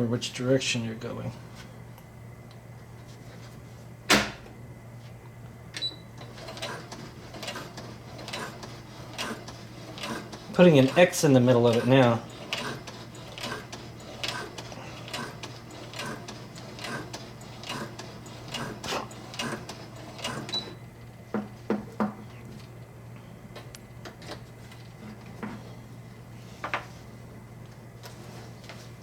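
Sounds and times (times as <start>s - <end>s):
sewing machine stitching: 6.2s - 20.8s.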